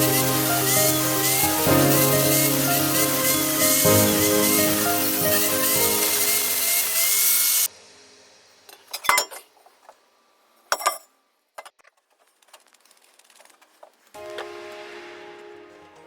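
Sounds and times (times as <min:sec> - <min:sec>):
background music: 0:00.0 - 0:07.1, 0:14.2 - 0:16.0
tools clinking and knocking: 0:08.7 - 0:09.6, 0:10.7 - 0:12.0.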